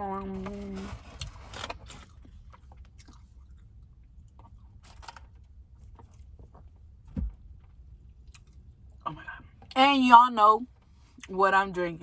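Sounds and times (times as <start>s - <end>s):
person chewing food: 2.0s - 6.4s, 8.2s - 8.7s.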